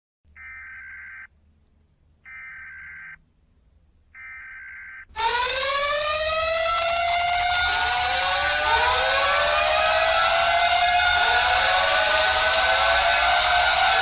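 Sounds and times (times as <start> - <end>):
rising siren wail: 5.1 - 14.0.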